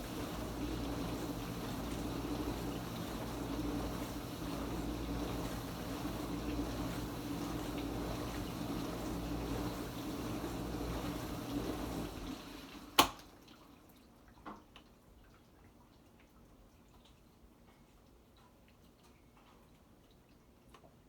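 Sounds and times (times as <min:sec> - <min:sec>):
dishwasher pump and water spray: 0:00.0 - 0:13.3
faint dripping and ticking: 0:13.5 - 0:21.0.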